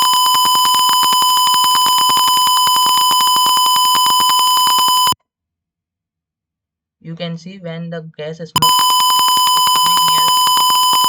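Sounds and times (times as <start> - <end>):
high-pitched buzzer tone crackling: 0.0 - 5.2, 8.6 - 11.0.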